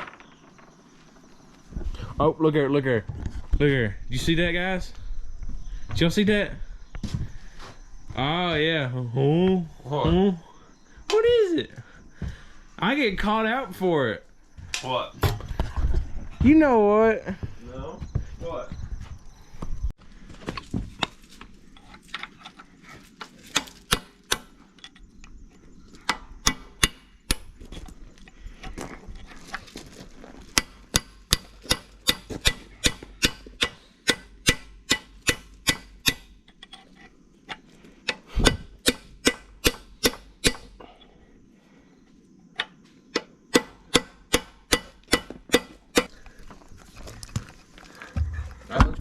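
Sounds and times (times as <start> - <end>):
hammer striking metal: 30.6 - 36.3, 38.4 - 40.7, 43.2 - 46.1.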